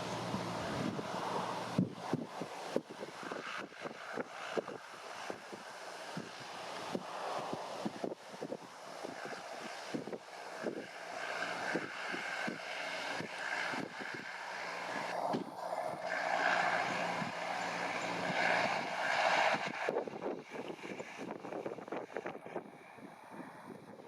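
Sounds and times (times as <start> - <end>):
tractor diesel engine under load: 0.0 - 4.3, 9.9 - 20.4
wind buffeting microphone: 0.0 - 24.0.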